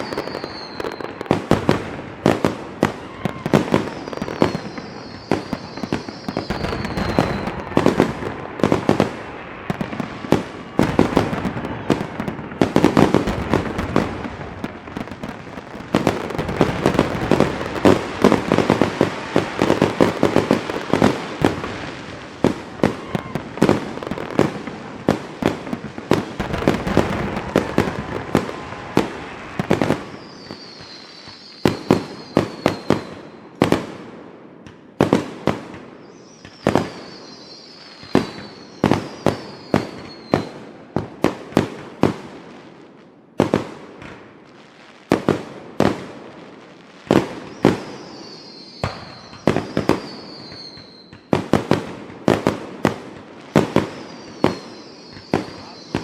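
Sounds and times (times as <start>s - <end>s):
high descending whistles: 0.0s - 1.1s, 3.4s - 8.0s, 27.3s - 33.1s, 47.5s - 51.1s
fireworks bangs: 0.0s - 56.0s.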